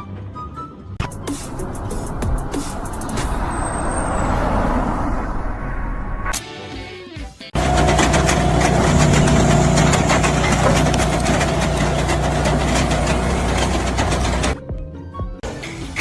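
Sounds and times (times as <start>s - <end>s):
engine idling: 7.6s - 14.6s.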